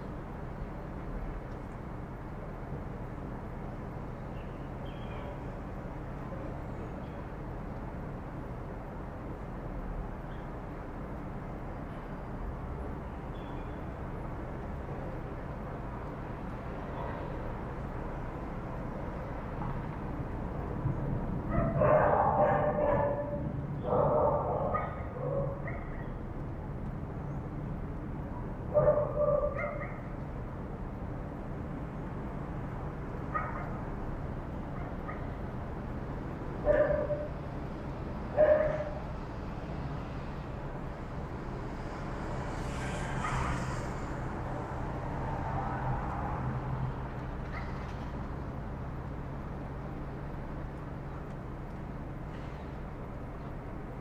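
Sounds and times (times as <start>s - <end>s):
dogs barking: 21.5s - 26.0s, 28.7s - 30.1s, 33.3s - 33.8s, 34.7s - 35.4s, 36.6s - 37.4s, 38.4s - 39.0s.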